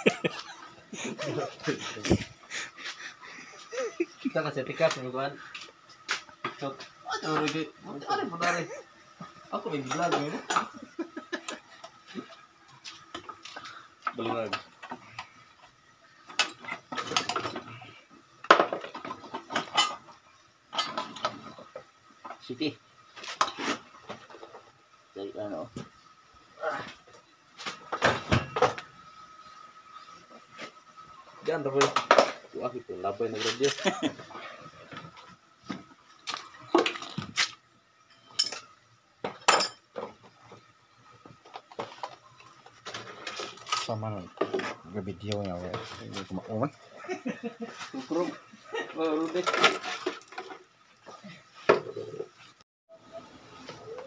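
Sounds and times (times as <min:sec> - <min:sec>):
metal tools clinking and clanking: 0:18.9 - 0:20.0, 0:38.1 - 0:40.1, 0:49.2 - 0:50.6
metal tools clinking and knocking: 0:38.1 - 0:40.1.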